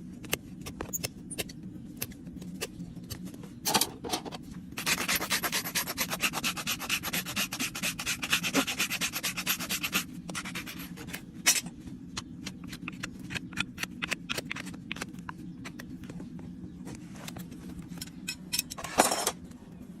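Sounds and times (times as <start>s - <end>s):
rasp scraping a hoof: 4.8s - 11.2s.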